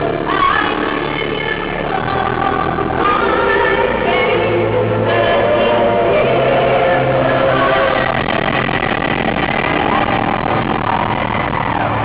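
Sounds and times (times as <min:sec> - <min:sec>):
music: 0:00.0 - 0:12.0
vehicle noise: 0:07.0 - 0:12.0.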